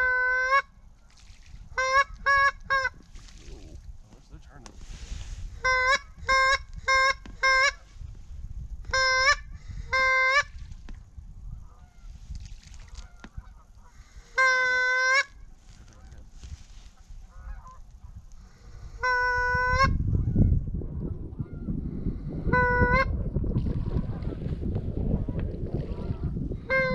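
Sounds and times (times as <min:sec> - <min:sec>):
wind rumbling on microphone: 0:00.0 - 0:26.9
duck call quacks: 0:01.8 - 0:03.0, 0:05.6 - 0:07.8, 0:08.9 - 0:10.5, 0:14.3 - 0:15.3, 0:18.9 - 0:19.9.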